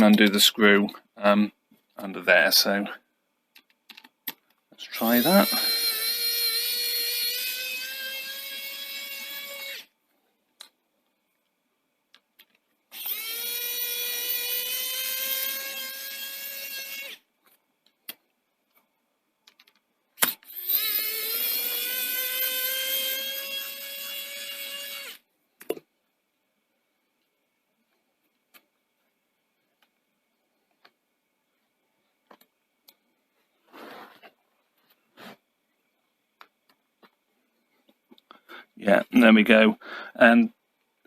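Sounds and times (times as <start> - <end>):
electric screwdriver whirring: 5.2 - 9.8, 12.9 - 17.2, 20.2 - 25.2.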